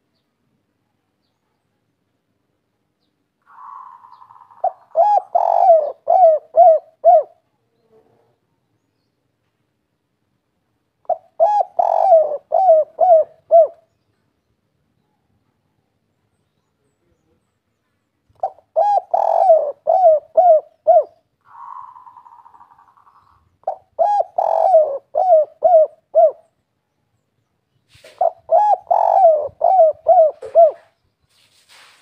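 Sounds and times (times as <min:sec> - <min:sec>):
dove cooing: 0:03.4 - 0:08.4, 0:11.0 - 0:13.9, 0:18.4 - 0:26.5, 0:27.9 - 0:31.0.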